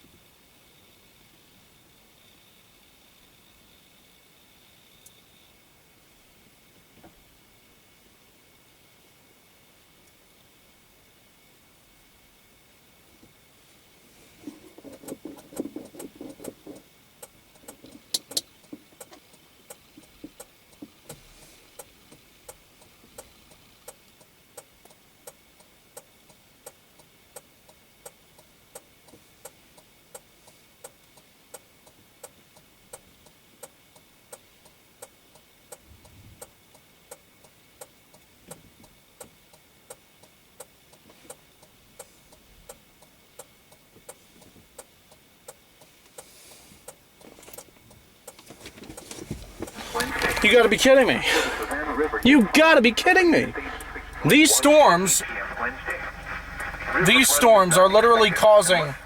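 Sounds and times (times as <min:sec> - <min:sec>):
low hiss: 0:00.0 - 0:59.0
faint regular ticking: 0:36.4 - 0:48.4, 0:49.6 - 0:59.0.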